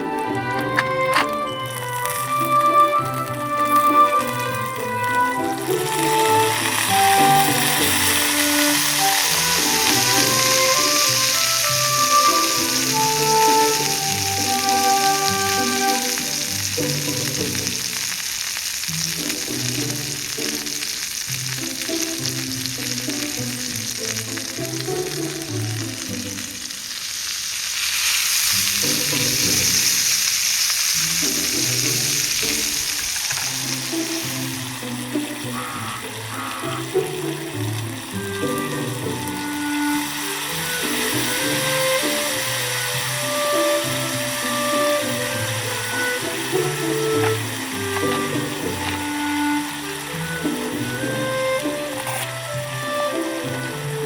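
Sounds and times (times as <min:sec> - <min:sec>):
background music: 0:00.0 - 0:27.0, 0:28.5 - 0:30.2, 0:30.9 - 0:54.0
food sizzling in a pan: 0:00.0 - 0:54.0.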